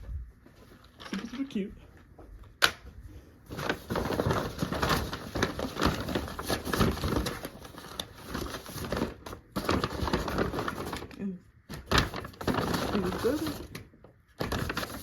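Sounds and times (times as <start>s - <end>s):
packaging crinkling and rustling: 3.4s - 15.0s.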